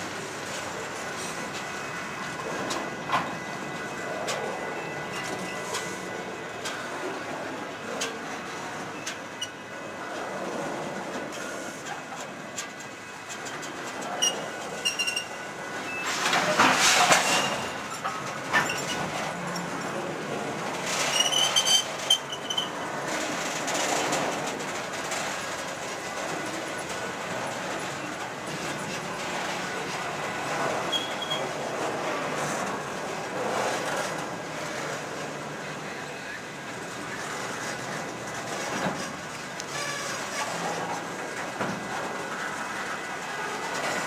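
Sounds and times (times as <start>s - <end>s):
freight train cars rolling on rails: 0.0s - 44.0s
train wheels clicking over rail joints: 0.0s - 44.0s
train wheels squealing: 3.2s - 6.2s, 14.1s - 19.2s, 21.0s - 22.9s, 30.8s - 31.6s.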